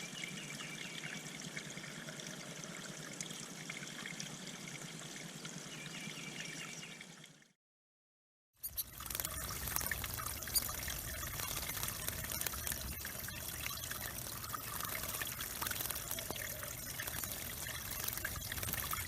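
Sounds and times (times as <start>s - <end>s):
water trickling into pond: 0.0s - 7.6s, 8.6s - 19.0s
faint high chirps: 8.6s - 19.0s
sharp water splashes: 8.6s - 19.0s.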